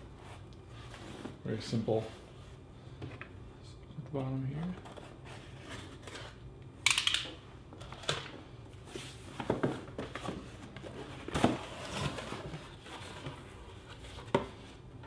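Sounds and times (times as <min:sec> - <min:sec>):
cardboard and paper crinkling: 0:08.9 - 0:14.7.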